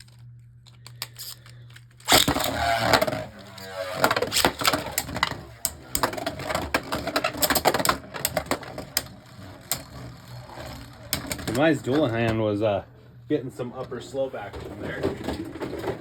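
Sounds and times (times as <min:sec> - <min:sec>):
spinning tops clashing in plastic stadium: 0:00.0 - 0:11.8.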